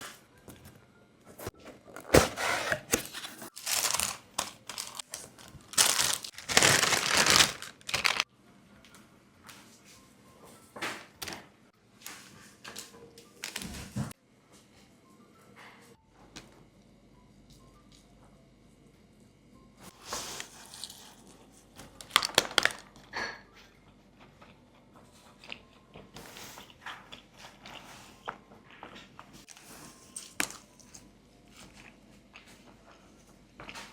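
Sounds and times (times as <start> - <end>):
plastic packaging crinkling: 3.0 - 8.3, 21.8 - 23.0.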